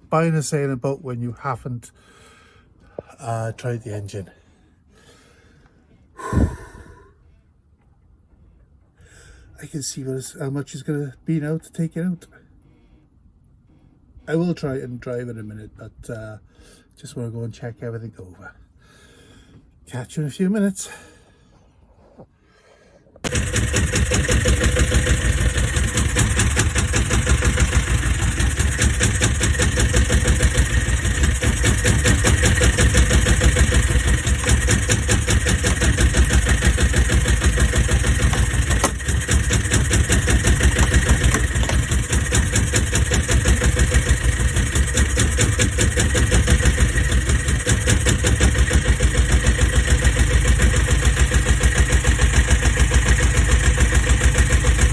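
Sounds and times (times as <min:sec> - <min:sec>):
diesel engine knocking steadily: 0:23.3 - 0:54.9.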